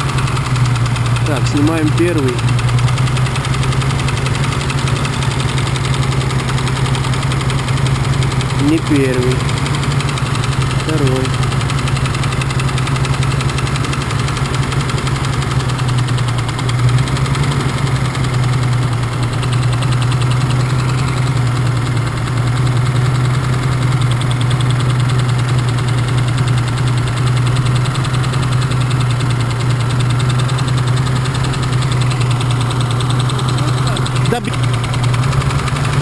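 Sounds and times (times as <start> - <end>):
engine idling with a knock: 0.0 - 36.0.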